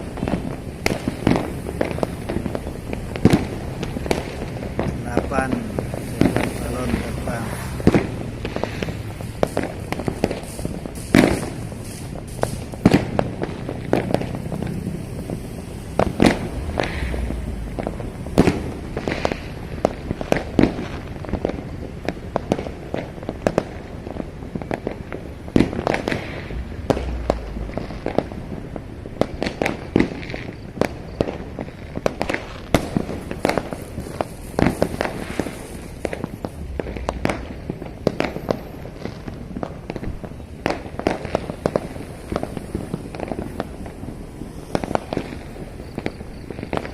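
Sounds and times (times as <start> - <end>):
distant explosions rumble: 0.0 - 46.9
fireworks bangs and pops: 0.0 - 46.9.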